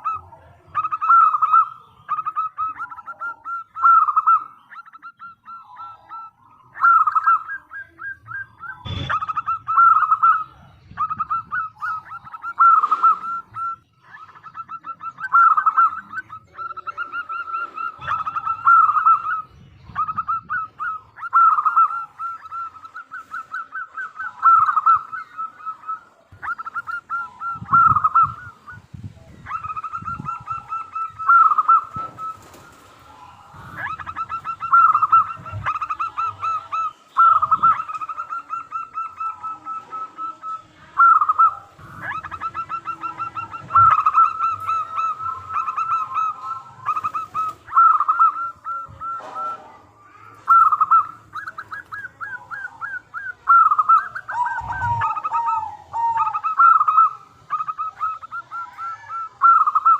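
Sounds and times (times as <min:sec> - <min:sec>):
dove cooing: 0:00.0 - 0:59.9.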